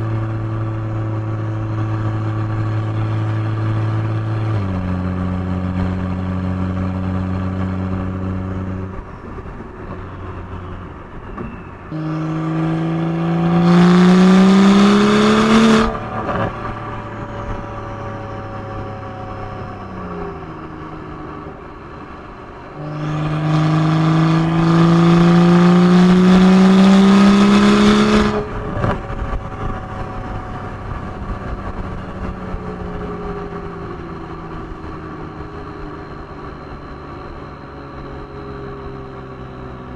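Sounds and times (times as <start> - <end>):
car exhaust accelerating: 0.0 - 39.9
sharp exhaust crack: 11.9 - 17.3.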